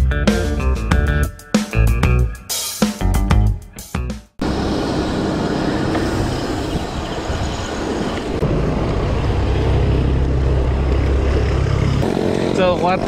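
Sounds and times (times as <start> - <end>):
heavy low rumble: 4.4 - 13.0
passing traffic: 4.4 - 13.0
wind rushing over microphone: 4.5 - 13.0.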